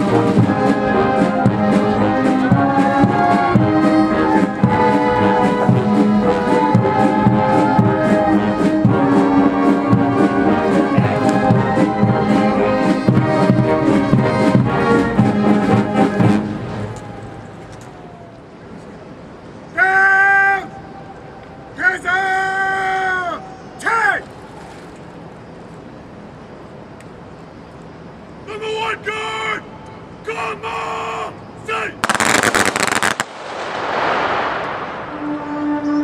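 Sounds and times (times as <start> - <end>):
brass band playing a march: 0.0 - 17.0, 32.0 - 33.2, 34.6 - 36.0.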